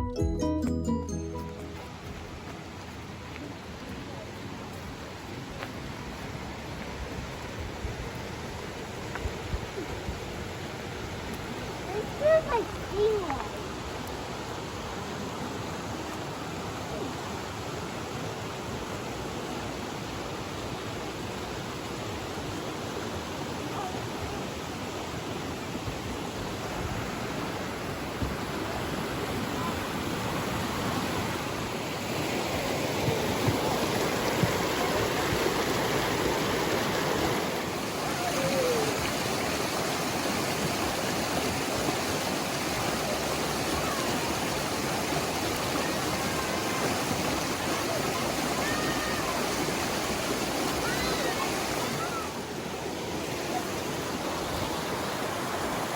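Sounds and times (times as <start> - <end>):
stream water rushing: 0.8 - 55.9.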